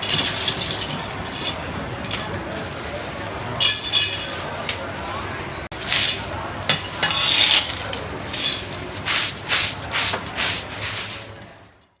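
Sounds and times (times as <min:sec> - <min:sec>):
candy rubbing on work surface: 0:07.4 - 0:11.4.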